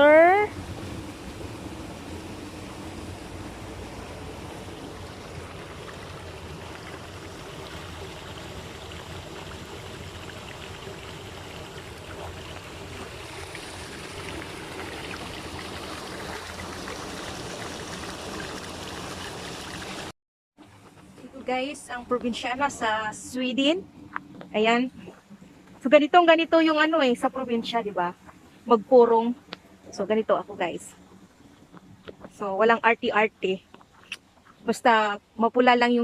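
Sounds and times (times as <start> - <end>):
water trickling at lake edge: 0.0 - 20.1, 26.5 - 35.8.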